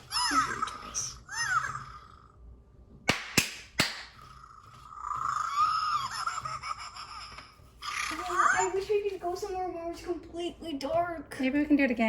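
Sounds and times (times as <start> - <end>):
hand claps: 3.1 - 4.3.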